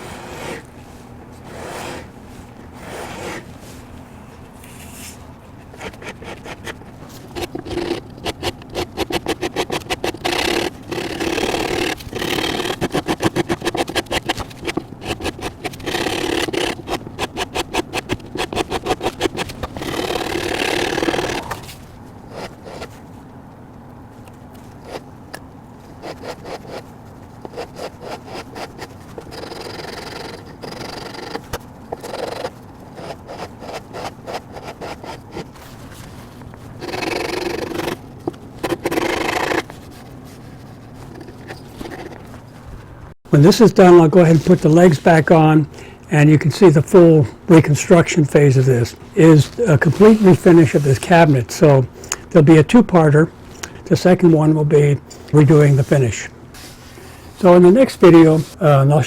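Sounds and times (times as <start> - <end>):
sandpaper rubbing on wood: 0.0 - 0.7, 1.4 - 3.7, 5.8 - 21.6, 26.0 - 26.9, 27.5 - 31.4, 36.8 - 38.0, 38.6 - 42.1, 49.4 - 51.3, 57.6 - 58.6.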